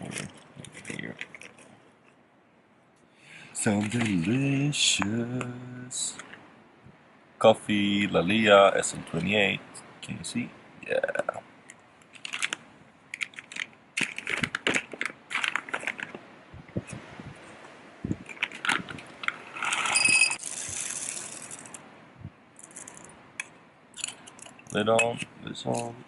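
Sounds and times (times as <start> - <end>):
coffee beans pouring into grinder: 19.6 - 21.7.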